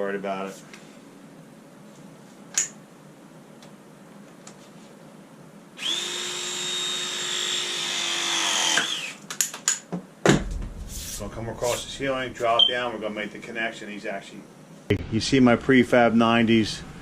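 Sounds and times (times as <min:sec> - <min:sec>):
power tool motor whining: 0:05.8 - 0:09.1.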